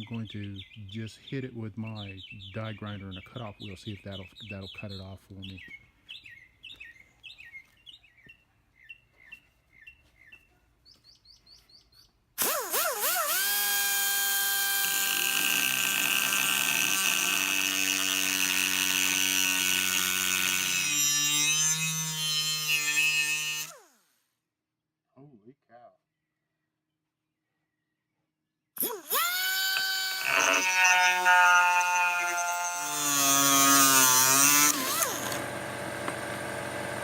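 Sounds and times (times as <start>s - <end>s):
die grinder cutting metal: 12.4s - 24.0s, 28.8s - 37.0s.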